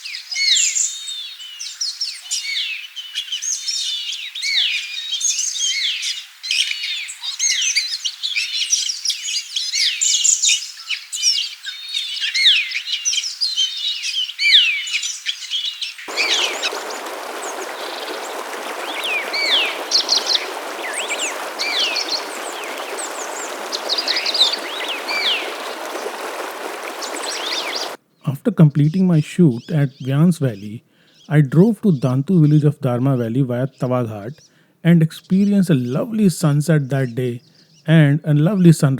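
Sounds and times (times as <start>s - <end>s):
flowing stream water: 16.1s - 28.0s
small birds chirping: 16.1s - 28.0s.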